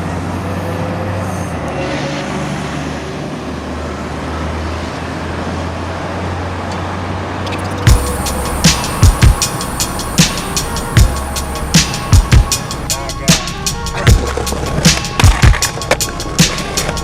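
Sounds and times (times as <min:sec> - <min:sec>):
street traffic rumble: 0:00.0 - 0:17.0
sharp hits: 0:07.5 - 0:17.0.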